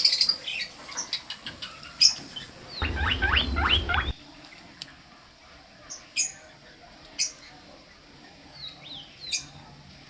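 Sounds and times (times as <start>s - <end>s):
guinea pig squeaking: 0.0s - 4.2s
low rumble: 2.4s - 4.2s.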